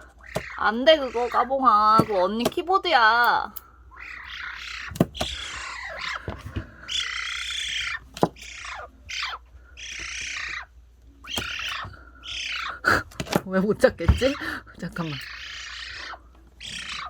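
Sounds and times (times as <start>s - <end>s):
magpie rasping calls: 0.0s - 10.7s, 11.3s - 13.0s, 14.0s - 17.0s.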